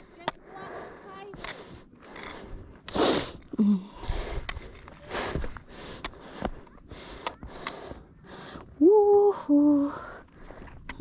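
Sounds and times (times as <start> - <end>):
bursts of breath: 0.0 - 8.8.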